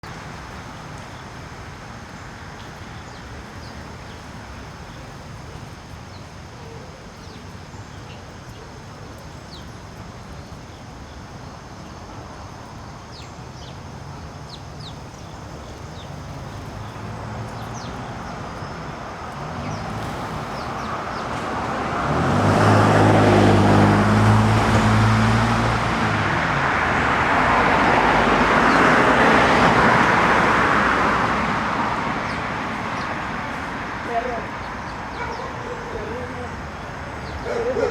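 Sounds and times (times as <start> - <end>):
road traffic noise: 0.0 - 37.9
vehicle passing close: 14.5 - 37.9.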